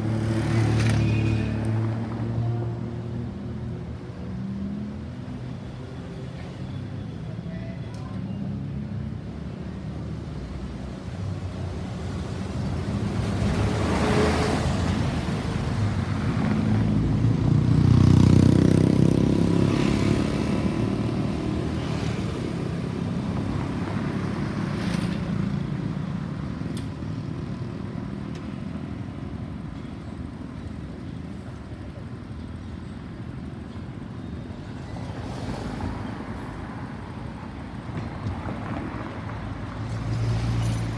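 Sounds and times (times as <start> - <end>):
other vehicles going by: 0.0 - 9.3, 10.2 - 40.9.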